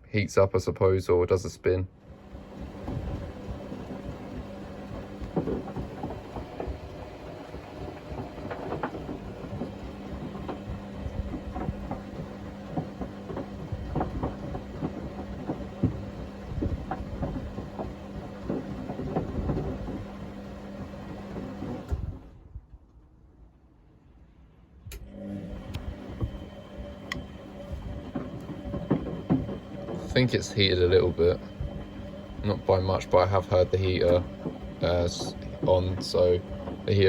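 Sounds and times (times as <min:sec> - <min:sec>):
washing machine motor hum: 0:00.6 - 0:22.4, 0:25.0 - 0:37.0
drum swishing and knocking: 0:26.0 - 0:37.0.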